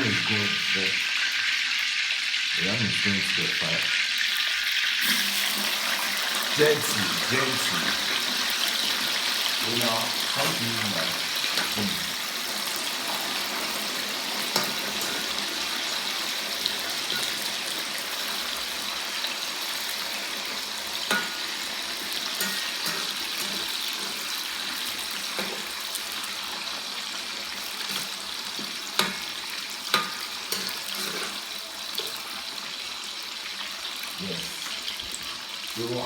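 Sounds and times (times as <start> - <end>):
chips sizzling in hot oil: 0.0 - 36.0
sharp clicks from frying: 7.4 - 35.8.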